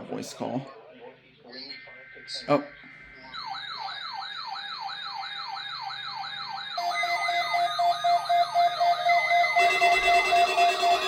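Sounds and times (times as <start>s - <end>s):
electronic siren yelping: 3.2s - 11.0s
pulsing steady tones: 6.8s - 11.0s.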